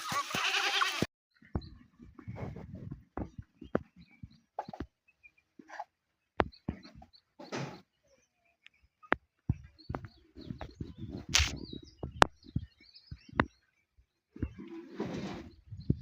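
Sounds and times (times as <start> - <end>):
knocks and clicks: 9.1 - 13.5
low thumps: 9.5 - 13.5.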